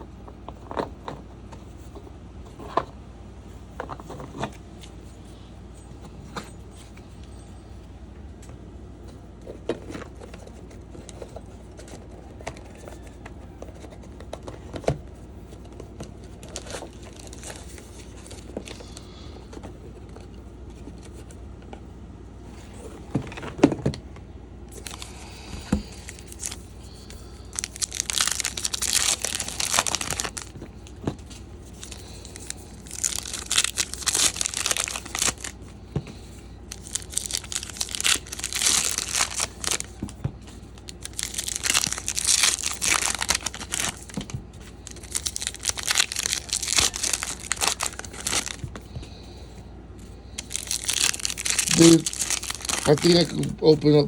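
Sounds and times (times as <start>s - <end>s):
card wrappers tearing and crinkling: 9.5s - 21.2s, 24.7s - 49.2s, 50.3s - 54.0s.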